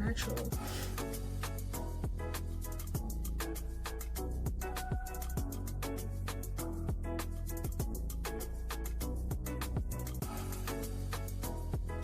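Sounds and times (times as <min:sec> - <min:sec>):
guitar: 0:00.0 - 0:12.0
upbeat music with steady beat: 0:00.0 - 0:12.0.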